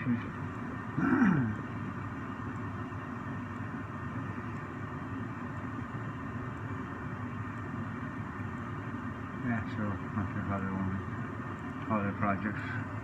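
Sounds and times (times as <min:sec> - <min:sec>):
room noise hum and hiss: 0:00.0 - 0:13.0
faint tick: 0:04.5 - 0:04.7.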